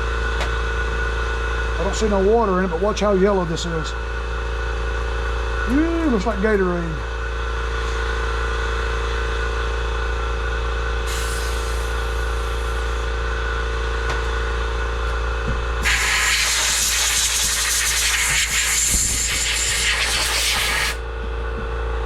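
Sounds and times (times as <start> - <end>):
pressurized air hiss: 11.1 - 13.0, 15.8 - 21.0.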